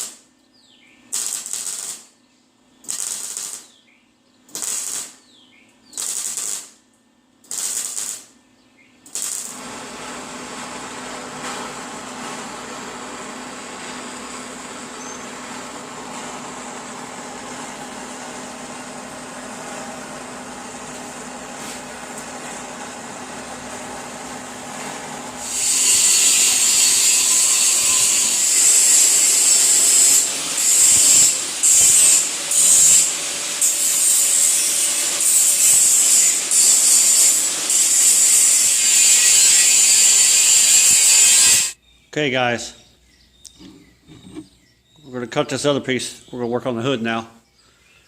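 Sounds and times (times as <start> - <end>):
welding arc crackling hiss: 0.0 - 0.2, 1.1 - 2.2, 2.8 - 3.8, 4.5 - 5.3, 6.0 - 6.8, 7.4 - 8.4, 9.0 - 10.4, 25.4 - 41.8.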